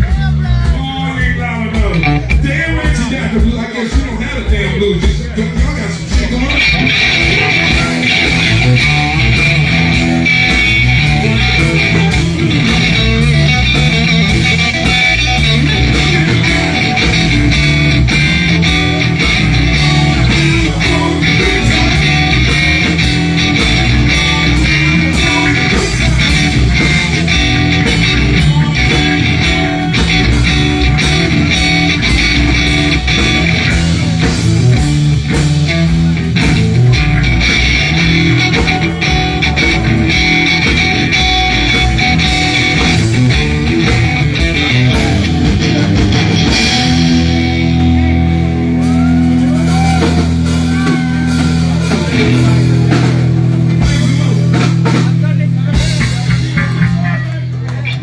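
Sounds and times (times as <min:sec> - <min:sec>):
blues band playing: 0:00.0 - 0:58.0
electric guitar: 0:00.0 - 0:58.0.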